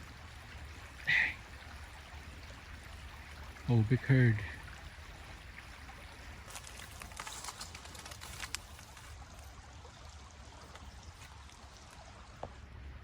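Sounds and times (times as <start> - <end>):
creek running: 0.0 - 13.0
soft crackles: 6.3 - 9.5.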